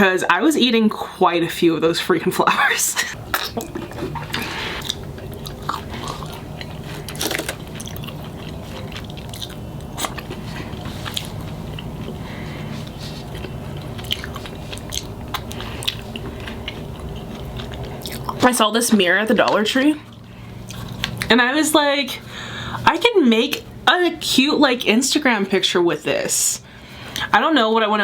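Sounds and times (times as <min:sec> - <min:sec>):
steady low hum: 0:00.0 - 0:28.0
chewing and biting food: 0:03.2 - 0:21.3.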